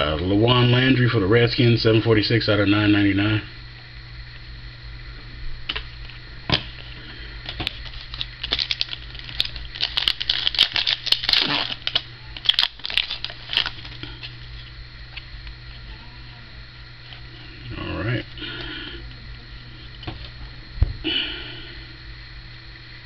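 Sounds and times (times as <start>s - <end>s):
steady low hum: 0.0s - 23.0s
foil wrapper tearing and crinkling: 7.4s - 14.7s.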